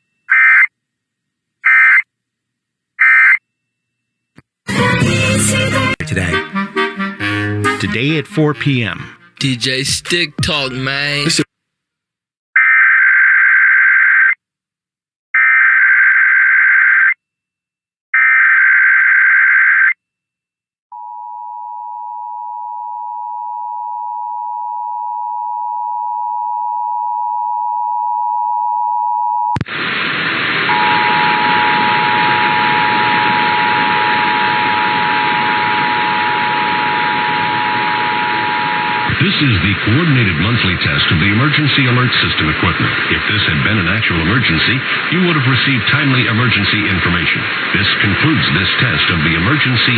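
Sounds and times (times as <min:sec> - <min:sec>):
loud static hiss: 0:29.6 - 0:49.9
two-tone attention signal: 0:30.7 - 0:39.2.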